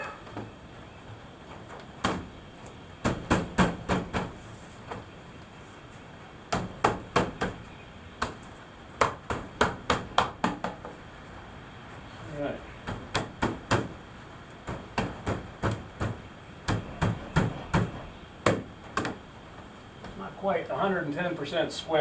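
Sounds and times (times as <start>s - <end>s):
hammer blows on wood: 14.6s - 19.2s.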